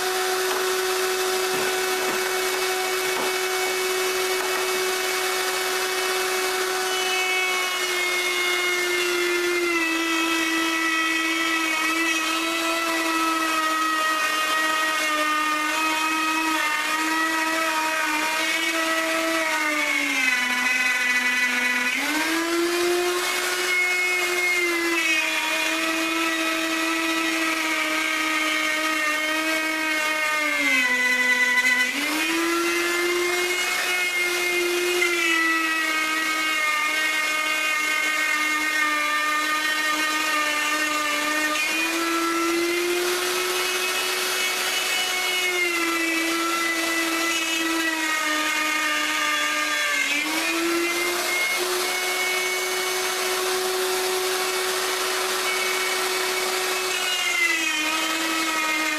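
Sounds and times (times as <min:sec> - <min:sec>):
electric router whining: 0:00.0 - 0:58.9.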